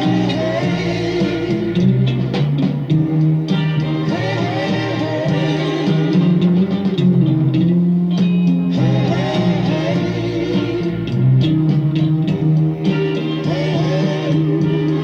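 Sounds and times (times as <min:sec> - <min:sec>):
soul music with singing: 0:00.0 - 0:15.0.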